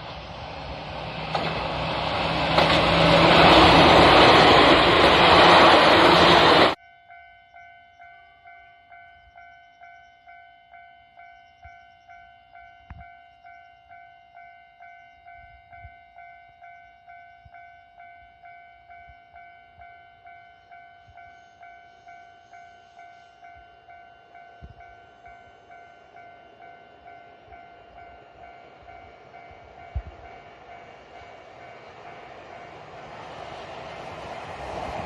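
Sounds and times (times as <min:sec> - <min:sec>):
approaching train rushing: 0:00.0 - 0:06.8, 0:16.6 - 0:35.0.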